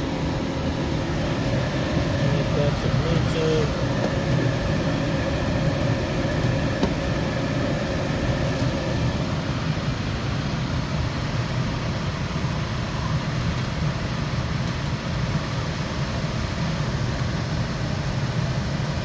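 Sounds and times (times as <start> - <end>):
faint whine: 0.0 - 11.8
furnace burners rumbling: 0.0 - 19.0.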